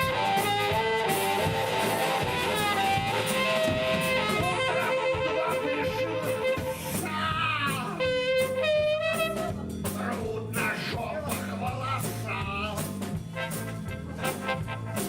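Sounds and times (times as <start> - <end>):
lead melody bending in pitch: 0.0 - 7.0
drums steady beat: 0.0 - 15.0
live band playing: 0.0 - 15.0.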